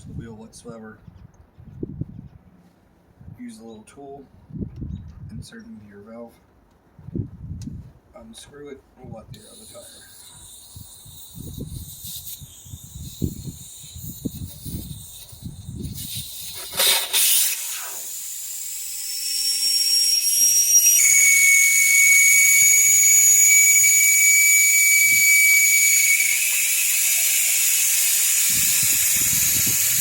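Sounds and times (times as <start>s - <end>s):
air hissing from tire valve: 9.4s - 30.0s.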